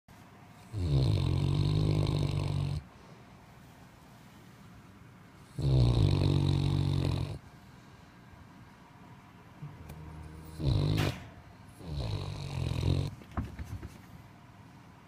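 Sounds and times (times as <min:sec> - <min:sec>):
man snoring: 0:00.7 - 0:02.8, 0:05.6 - 0:07.4, 0:10.1 - 0:11.1, 0:11.8 - 0:13.1.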